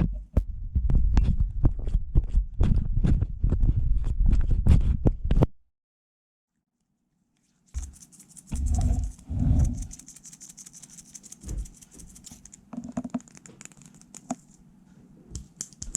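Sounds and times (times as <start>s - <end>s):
light tapping and scratching: 7.4s - 15.9s
deep rubbing or brushing: 7.7s - 12.3s.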